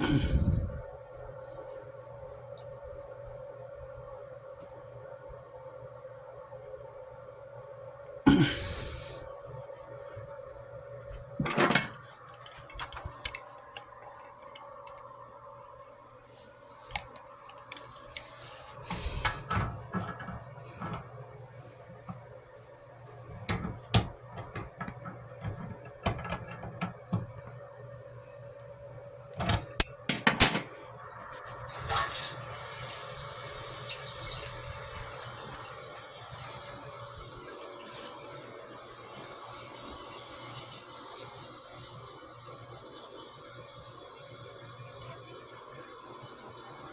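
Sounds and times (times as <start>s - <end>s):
metal tools and pipe fittings clanking: 11.4s - 15.0s.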